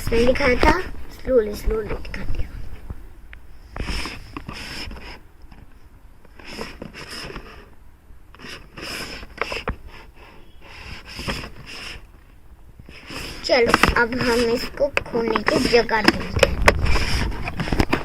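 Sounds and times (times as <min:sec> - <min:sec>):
cardboard box rustling and scraping: 0:03.7 - 0:05.2, 0:06.3 - 0:07.7, 0:08.4 - 0:12.1, 0:12.8 - 0:18.0.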